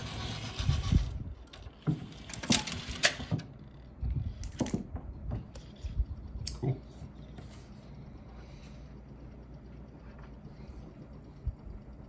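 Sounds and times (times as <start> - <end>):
mechanism clicking and clunking: 0.2 - 5.8.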